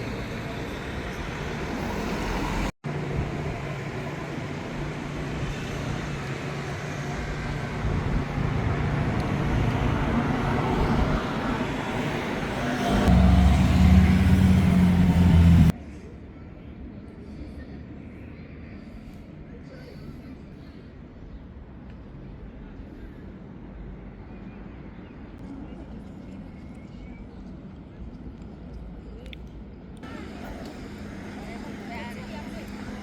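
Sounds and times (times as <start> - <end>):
motor vehicles passing: 0.5 - 15.7
vehicle engine revving: 12.6 - 15.7.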